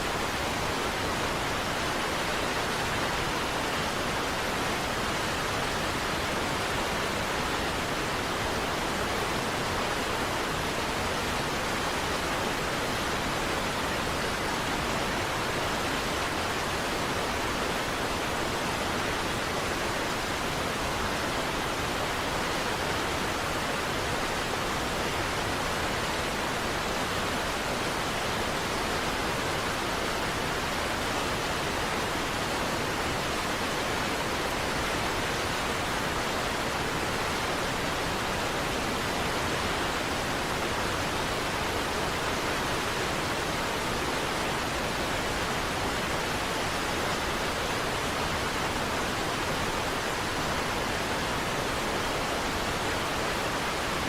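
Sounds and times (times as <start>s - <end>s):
large waterfall rushing: 0.0s - 54.0s.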